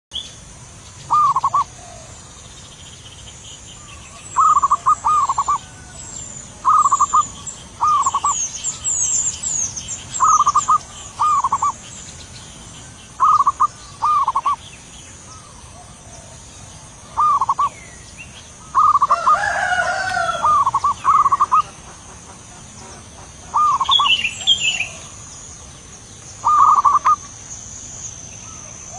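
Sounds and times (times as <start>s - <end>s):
small birds chirping: 0.1s - 28.9s
dove cooing: 1.0s - 2.2s, 4.2s - 8.9s, 10.2s - 11.8s, 13.2s - 14.6s, 15.4s - 17.7s, 18.6s - 21.9s, 23.4s - 25.2s, 26.4s - 27.3s.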